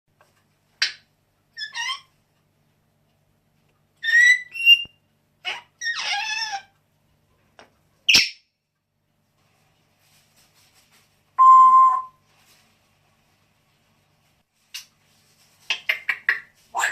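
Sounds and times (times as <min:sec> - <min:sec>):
pet animal squeaking and chirping: 0:01.6 - 0:02.2, 0:04.0 - 0:06.7.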